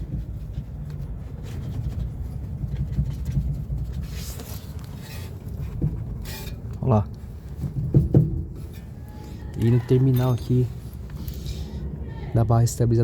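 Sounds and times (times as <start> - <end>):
faint suspension knocks: 7.5 - 9.0.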